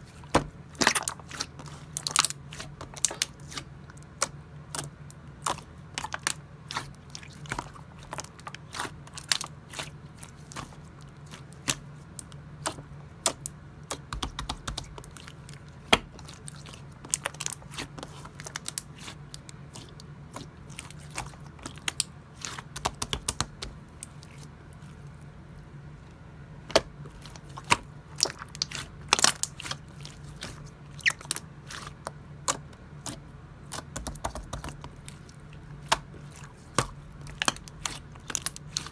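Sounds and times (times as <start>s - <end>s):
slime squished by hand: 0.0s - 25.2s, 26.7s - 38.9s
steady low hum: 0.0s - 38.9s.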